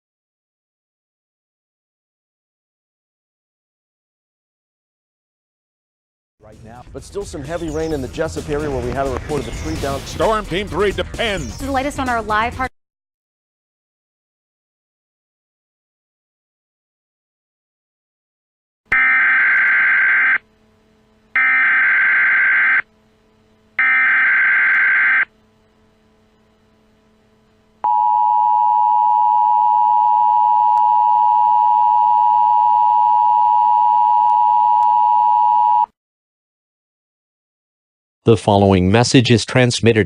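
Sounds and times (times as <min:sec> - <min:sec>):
digital data tones: 0:23.8 - 0:25.3
two-tone attention signal: 0:23.8 - 0:25.3, 0:27.8 - 0:35.9.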